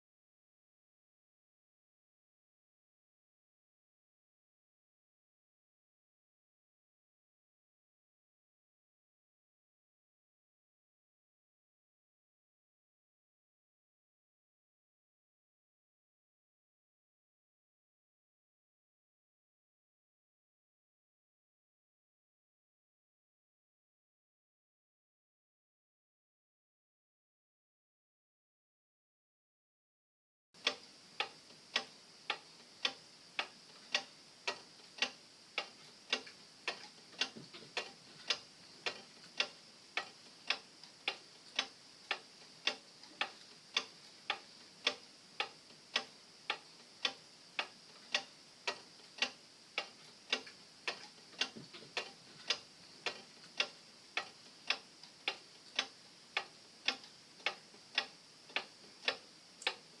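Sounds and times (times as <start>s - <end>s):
clock ticking: 30.6s - 60.0s.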